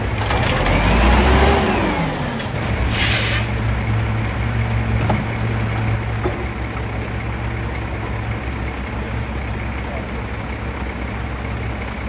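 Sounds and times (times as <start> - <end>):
truck engine idling: 0.0 - 12.0
air release hiss: 2.9 - 3.6.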